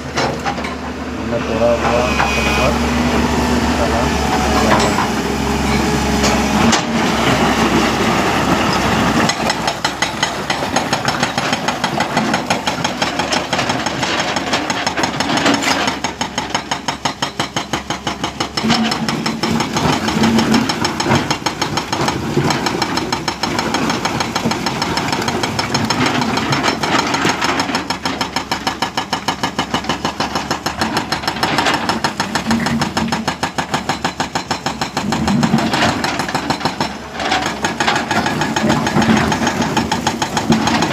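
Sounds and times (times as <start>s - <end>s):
diesel engine running: 0.0s - 16.5s
hydraulic breaker hammering rock: 3.8s - 40.9s.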